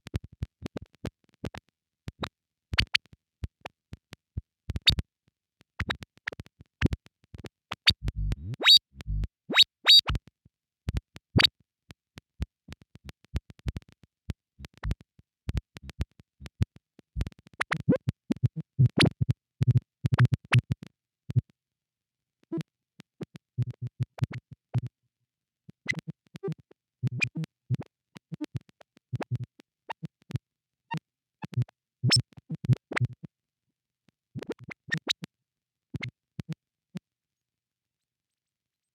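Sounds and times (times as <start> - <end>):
synthesizer clicks and blips: 7.7 - 10.2.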